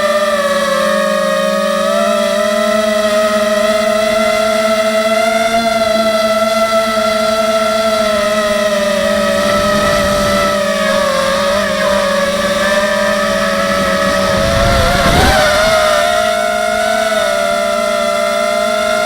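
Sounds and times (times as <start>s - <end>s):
quadcopter motors whining: 0.0s - 19.0s
rush of wind noise: 7.9s - 17.4s.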